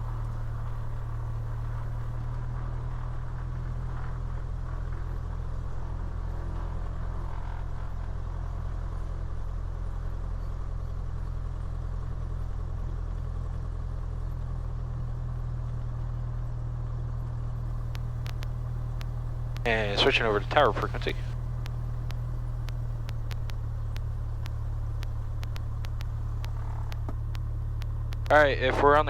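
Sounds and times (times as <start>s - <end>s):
faint clicks: 17.7s - 29.0s
plane piston engine idling: 17.7s - 29.0s.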